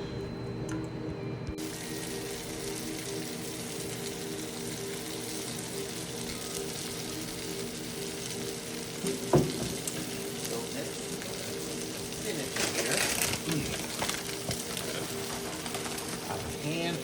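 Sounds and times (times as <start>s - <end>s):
low steady hum: 0.0s - 9.0s
food sizzling in frying pan: 1.6s - 17.0s.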